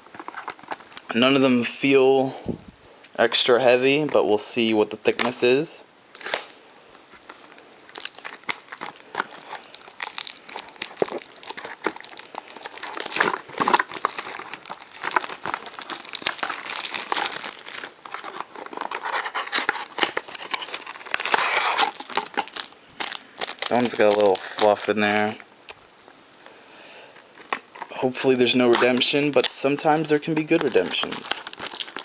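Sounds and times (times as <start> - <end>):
plastic and foil wrapping crinkling: 0.0 - 1.2, 6.1 - 25.4, 27.1 - 32.0.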